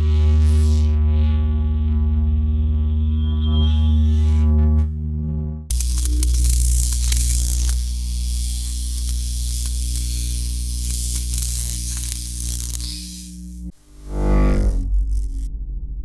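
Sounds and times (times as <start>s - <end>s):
crackling hissing static: 5.7s - 15.5s
lightsaber electric hum: 5.7s - 15.6s.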